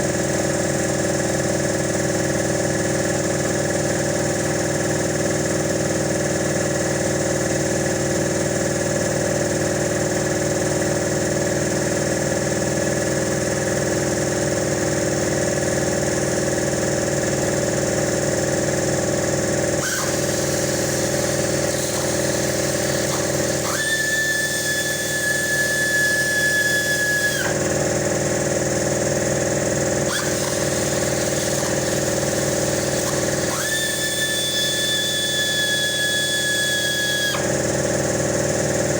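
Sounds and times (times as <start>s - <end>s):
mechanical hum: 0.0s - 38.9s
power tool whining: 17.3s - 38.9s.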